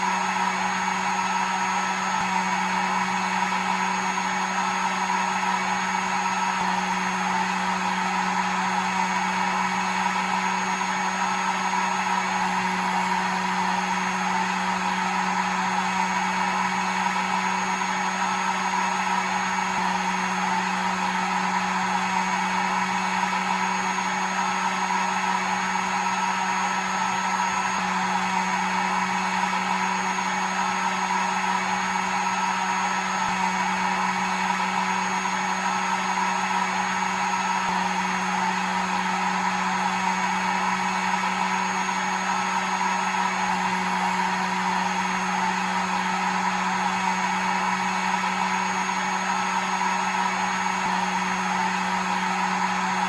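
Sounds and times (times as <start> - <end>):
hair dryer running: 0.0 - 53.0.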